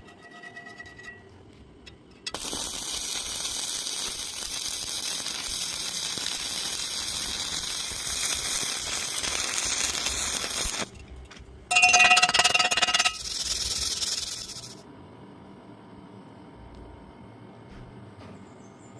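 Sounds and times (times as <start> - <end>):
welding arc crackling and hissing: 2.3 - 10.9, 12.4 - 14.8
metallic ringing burst: 11.7 - 14.8.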